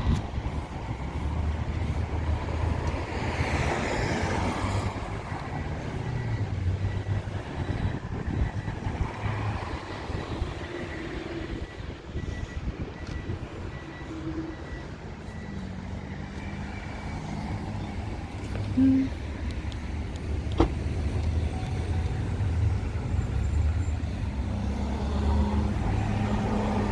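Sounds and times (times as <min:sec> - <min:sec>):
vehicle passing: 0:00.0 - 0:12.5, 0:13.2 - 0:26.9
wind rumble on microphone: 0:00.0 - 0:13.9
road noise: 0:00.0 - 0:26.9.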